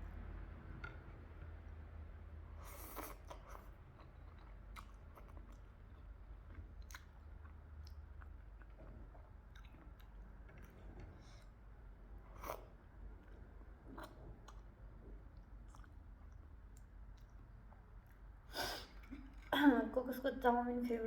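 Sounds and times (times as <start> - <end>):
chewing and biting food: 2.8 - 11.6, 12.2 - 18.4.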